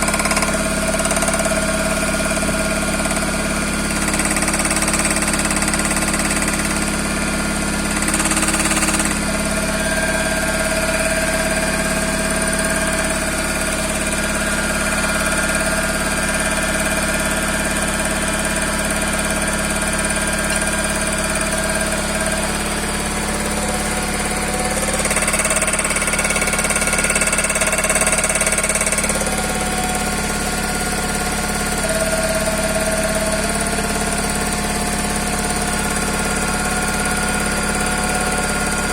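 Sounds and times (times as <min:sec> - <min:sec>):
car engine idling with a knock: 0:00.0 - 0:38.9.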